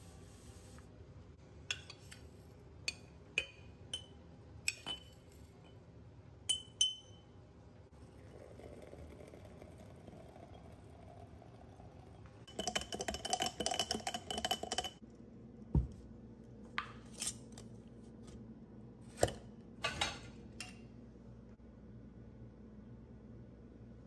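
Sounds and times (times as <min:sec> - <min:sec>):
kitchen knocks and clinks: 0:19.1 - 0:20.8.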